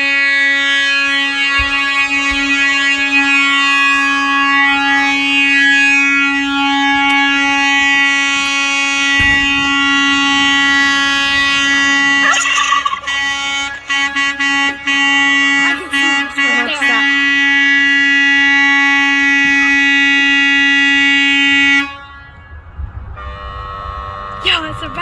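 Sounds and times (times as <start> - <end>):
air horn blast: 0.0 - 25.0.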